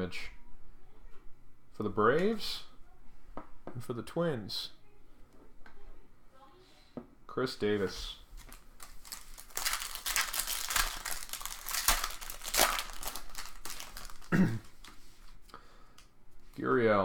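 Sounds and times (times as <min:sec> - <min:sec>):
wrapper crinkling and tearing: 0:08.3 - 0:15.4.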